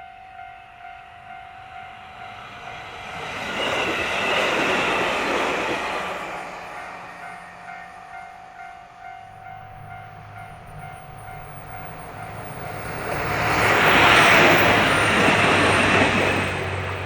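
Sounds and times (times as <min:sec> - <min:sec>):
train passing: 0:00.0 - 0:17.0
level-crossing warning bell: 0:06.7 - 0:16.1.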